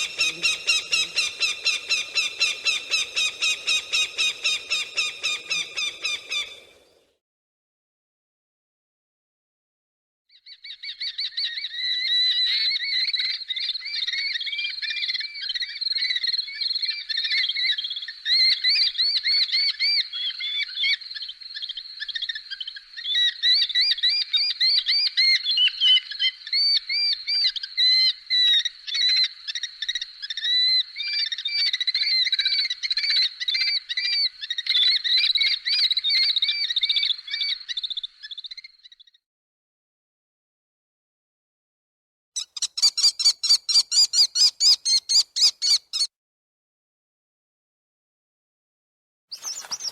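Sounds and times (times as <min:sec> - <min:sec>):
bird of prey calls: 0:00.0 - 0:07.0, 0:22.0 - 0:39.2, 0:42.4 - 0:46.1, 0:49.3 - 0:49.9.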